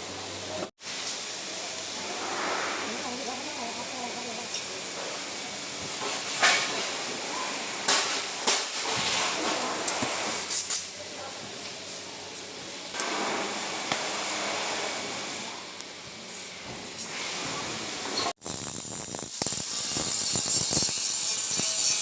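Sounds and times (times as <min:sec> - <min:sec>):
steady hiss: 0:00.0 - 0:11.0.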